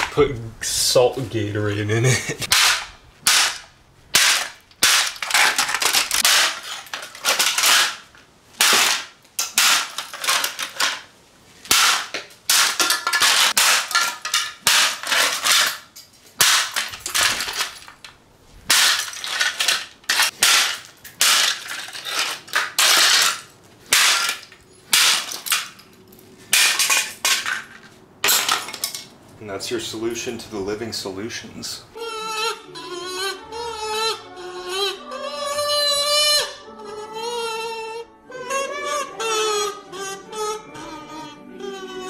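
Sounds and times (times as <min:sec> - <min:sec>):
hard blows smashing plastic fan: 0:02.5 - 0:17.9, 0:18.7 - 0:25.8
plastic cracking and rattling: 0:04.2 - 0:11.1.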